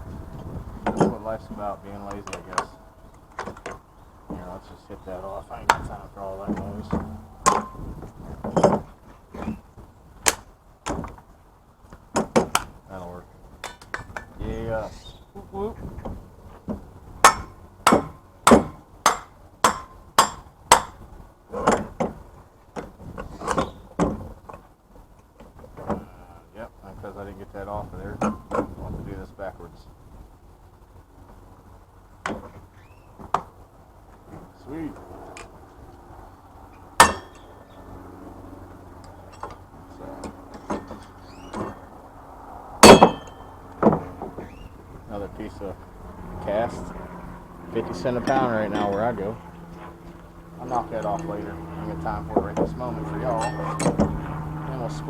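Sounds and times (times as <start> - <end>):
softer uneven knocks: 5.7 - 9.6
hammer striking metal: 17.2 - 21.0, 37.0 - 37.5, 42.8 - 44.0, 53.4 - 54.1.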